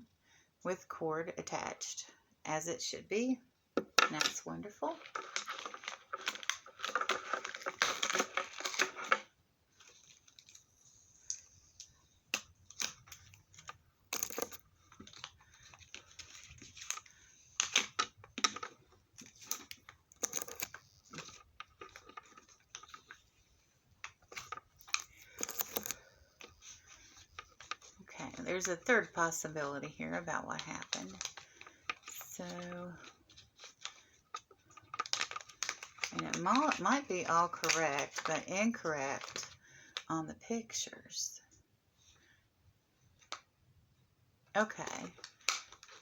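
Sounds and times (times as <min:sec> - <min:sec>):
plastic packaging crinkling: 0:04.8 - 0:40.0, 0:44.7 - 0:46.0.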